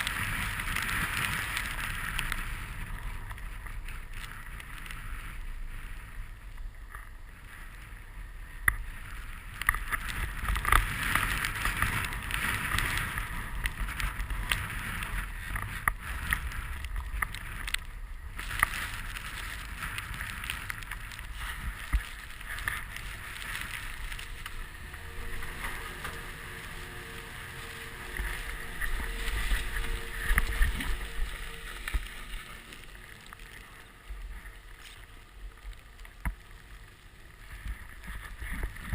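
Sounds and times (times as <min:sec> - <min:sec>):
wind buffeting microphone: 0:00.0 - 0:35.5.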